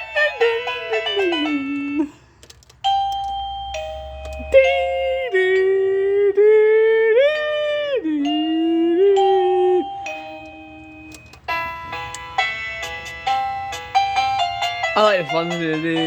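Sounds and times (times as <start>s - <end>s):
electronic doorbell chime: 2.8s - 5.4s, 8.2s - 16.0s.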